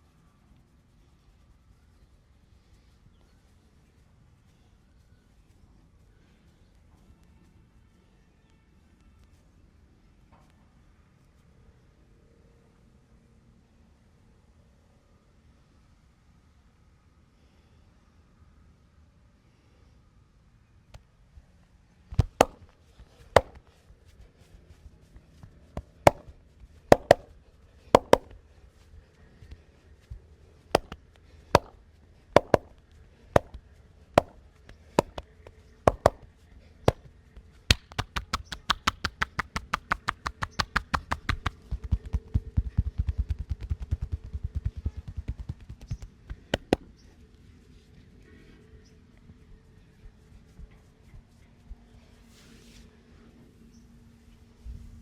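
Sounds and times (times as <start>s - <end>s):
fast chopping hand strikes: 22.2s - 22.7s, 23.3s - 23.6s, 25.8s - 26.3s, 26.9s - 27.3s, 27.9s - 28.4s, 30.7s - 31.8s, 32.4s - 32.8s, 33.4s - 33.6s, 34.2s - 35.3s, 35.9s - 36.2s, 36.9s - 37.1s, 37.7s - 46.9s
hands slapping skin: 22.2s - 23.6s, 25.8s - 26.3s, 26.9s - 27.3s, 27.9s - 28.4s, 30.7s - 32.8s, 33.4s - 33.6s, 34.2s - 46.9s.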